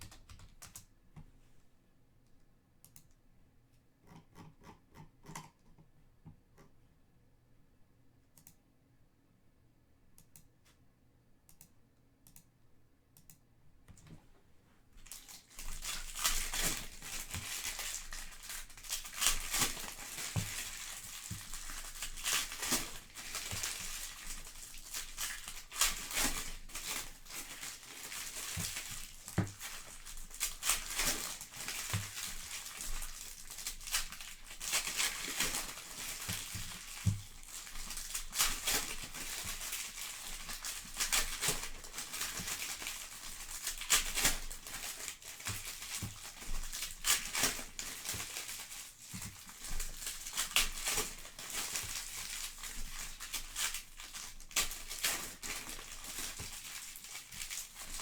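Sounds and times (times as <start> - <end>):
faint clicks: 2.2 - 3.2
wrappers torn and crinkled: 15.0 - 58.0.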